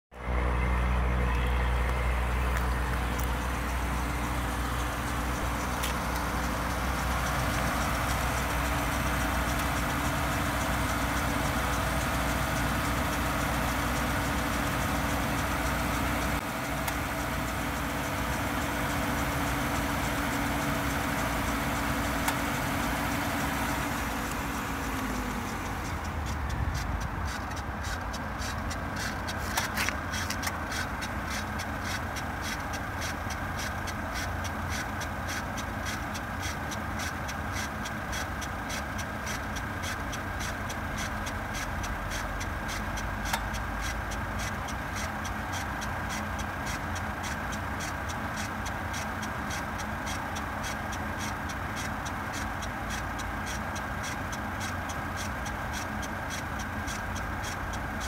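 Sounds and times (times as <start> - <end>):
car engine hum: 0.0 - 58.0
steady whine: 0.1 - 34.6
rhythmic ticking from wheel: 1.8 - 58.0.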